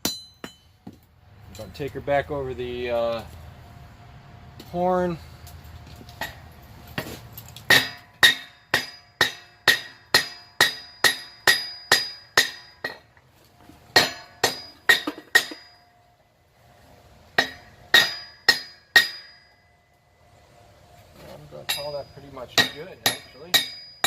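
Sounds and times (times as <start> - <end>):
hammer striking ringing anvil: 0.0 - 0.8, 7.7 - 13.0, 14.0 - 15.9, 17.4 - 19.7, 21.6 - 24.0.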